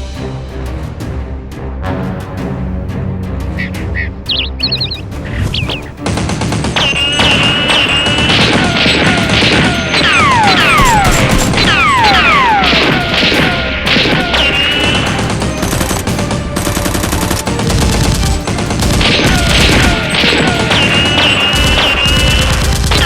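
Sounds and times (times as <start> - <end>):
music: 0.0 - 23.0
rapid gunfire: 5.6 - 23.0.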